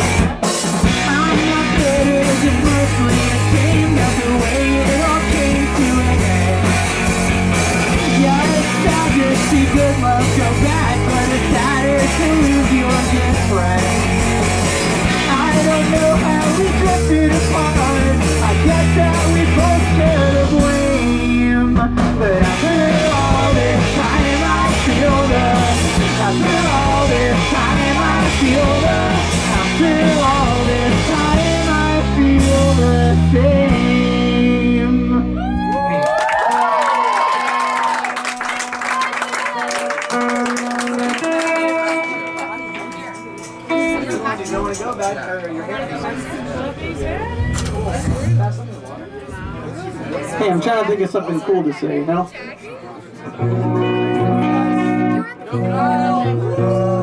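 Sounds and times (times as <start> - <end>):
heavy bass notes: 0.0 - 35.6, 47.1 - 48.7
live rock band playing: 0.0 - 44.9, 46.4 - 49.7, 53.3 - 57.0.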